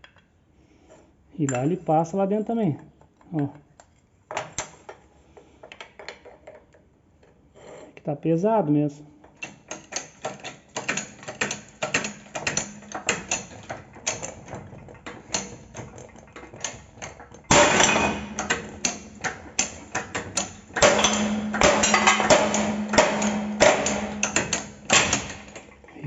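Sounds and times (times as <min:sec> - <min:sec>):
humming mechanical noise: 0:17.4 - 0:26.0.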